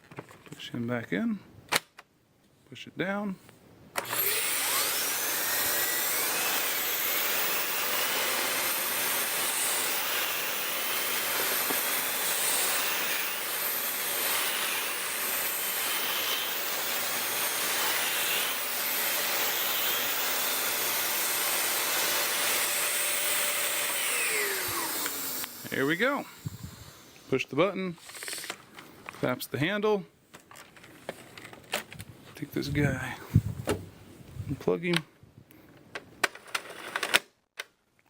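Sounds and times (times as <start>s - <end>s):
vacuum cleaner running: 4.0s - 27.4s.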